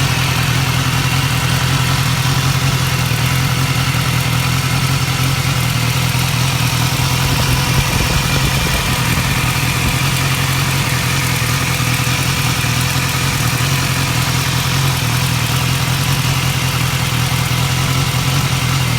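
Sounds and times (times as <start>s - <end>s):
engine ticking: 0.0s - 18.9s
motorcycle engine idling: 0.0s - 18.9s.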